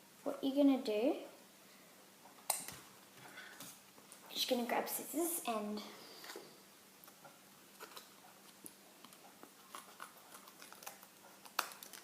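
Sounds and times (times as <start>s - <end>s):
packet rustling: 7.7s - 12.0s.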